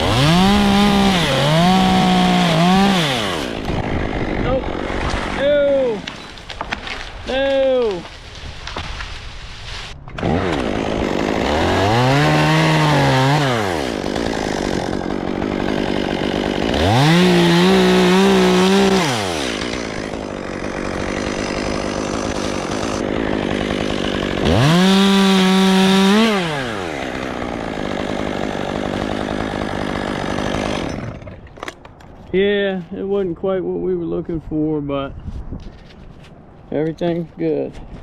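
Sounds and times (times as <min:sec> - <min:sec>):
chainsaw revving: 0:00.0 - 0:06.1, 0:10.1 - 0:31.6.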